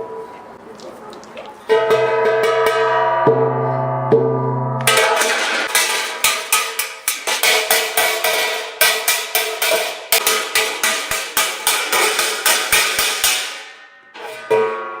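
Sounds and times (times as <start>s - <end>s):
gong ringing: 1.7s - 5.7s.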